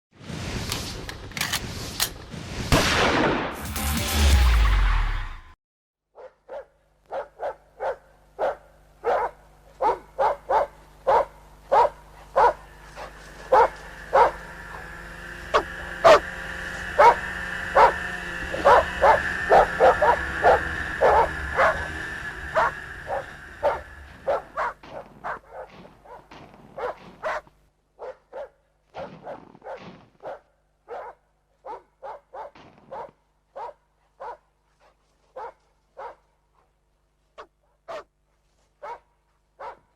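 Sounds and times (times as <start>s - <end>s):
dogs barking: 6.2s - 34.5s, 35.3s - 36.3s, 37.4s - 38.1s, 38.8s - 39.9s
steady background hum: 6.5s - 28.9s.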